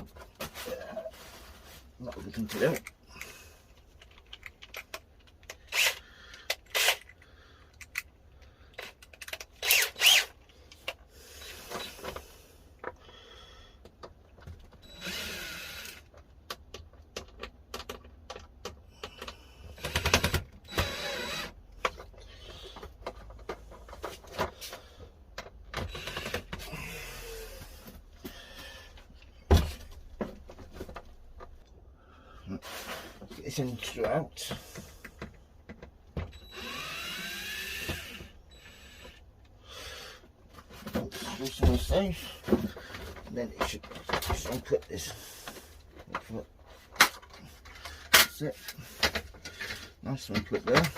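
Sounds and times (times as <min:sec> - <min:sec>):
rustling and scraping: 0:00.0 - 0:03.0
plastic and metal parts clicking: 0:02.5 - 0:11.0, 0:15.8 - 0:26.7.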